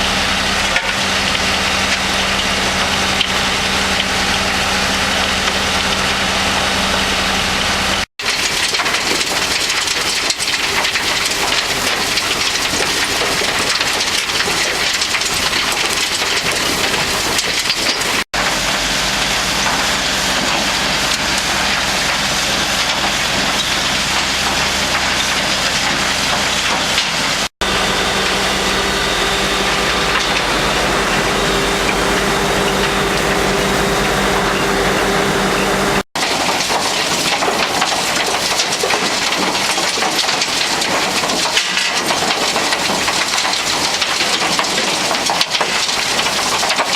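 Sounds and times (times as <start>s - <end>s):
diesel engine hum: 0.0s - 36.1s
rubble tumbling in rotating drum: 8.2s - 46.9s.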